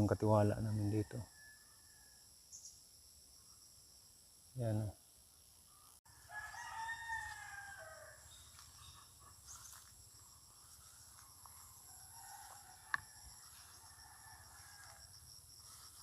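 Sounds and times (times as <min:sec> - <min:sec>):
insects trilling: 0:00.0 - 0:16.0
rooster crowing: 0:00.8 - 0:02.3, 0:06.1 - 0:08.4, 0:11.2 - 0:15.8.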